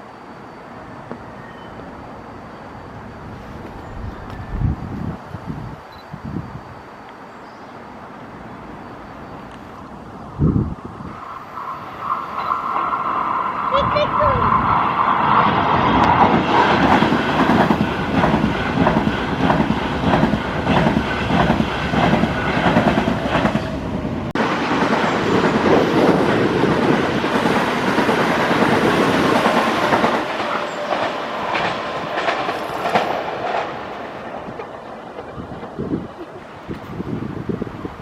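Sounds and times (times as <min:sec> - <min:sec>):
electric train passing: 0:00.0 - 0:38.0
wheels clicking over rail joints: 0:24.6 - 0:37.0.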